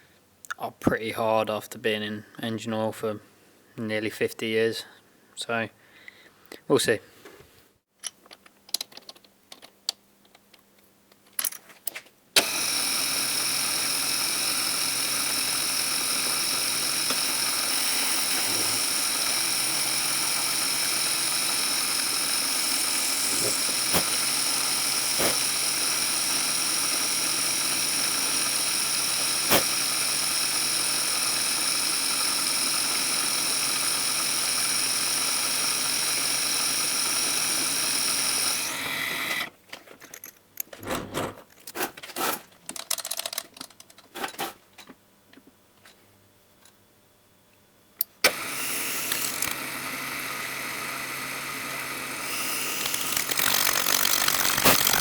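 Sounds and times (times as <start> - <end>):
knocks and handling sounds: 7.2 - 12.2, 39.6 - 46.8
machine-tool motor whining: 12.4 - 39.5, 48.2 - 55.0.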